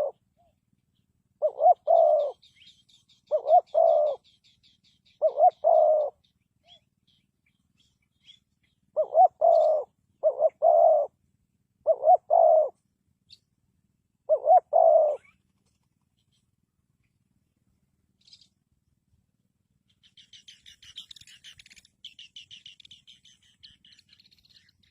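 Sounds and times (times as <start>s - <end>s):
dove cooing: 0.0s - 0.5s, 1.4s - 6.8s, 8.3s - 11.2s, 11.8s - 12.8s, 14.3s - 15.5s
small birds chirping: 0.0s - 11.1s, 11.9s - 13.6s, 14.3s - 17.3s, 18.1s - 18.8s, 19.8s - 24.9s.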